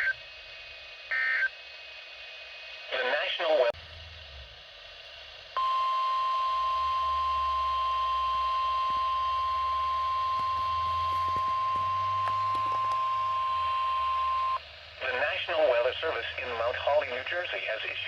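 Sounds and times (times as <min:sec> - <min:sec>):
steady alarm beep: 0:05.6 - 0:14.6.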